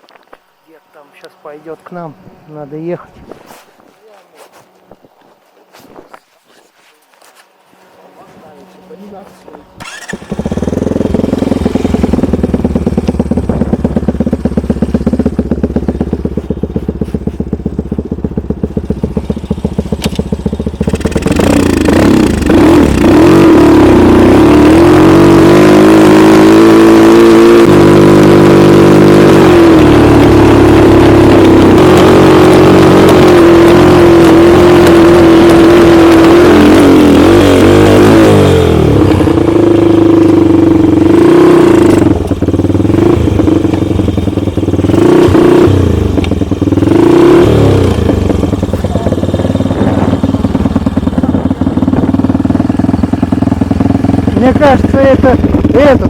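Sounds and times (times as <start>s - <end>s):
snowmobile engine revving: 9.8s - 17.6s, 20.0s - 56.0s.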